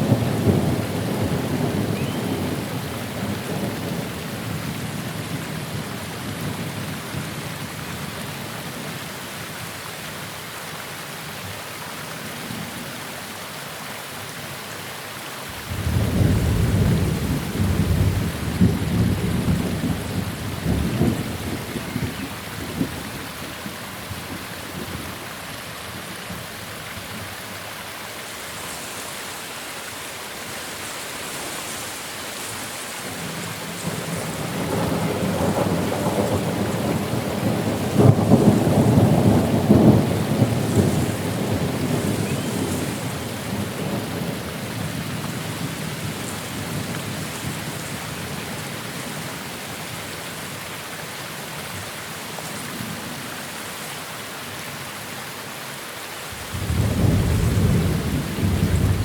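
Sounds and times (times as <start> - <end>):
thunder rumbling: 0.0 - 5.1, 15.6 - 23.4, 33.1 - 47.7, 56.4 - 59.0
steady rain: 0.0 - 59.0.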